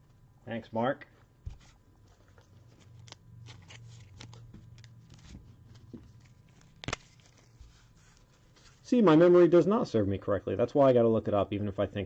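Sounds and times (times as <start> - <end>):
cards and plastic holders handled: 1.4 - 8.8.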